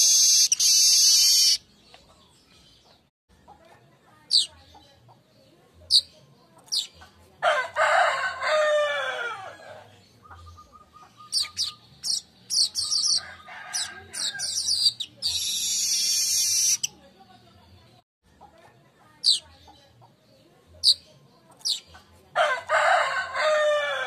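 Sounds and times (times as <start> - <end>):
high bird chirps: 0.0 - 2.0, 10.1 - 17.0
rooster crowing: 7.4 - 9.8, 13.2 - 14.5, 22.4 - 24.0.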